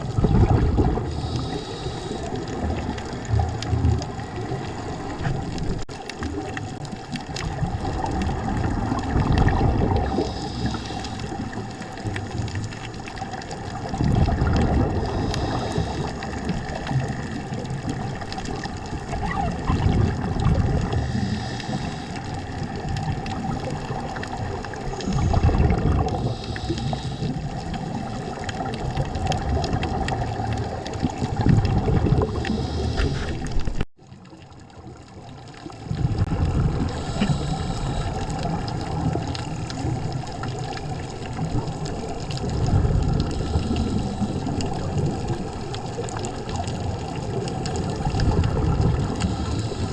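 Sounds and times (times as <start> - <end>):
exhaled bubbles rushing underwater: 0.0 - 49.9
steady underwater hum: 0.0 - 49.9
regulator hiss: 1.1 - 2.4, 10.1 - 11.6, 21.1 - 22.4, 26.2 - 27.4, 32.3 - 33.4, 36.9 - 38.5.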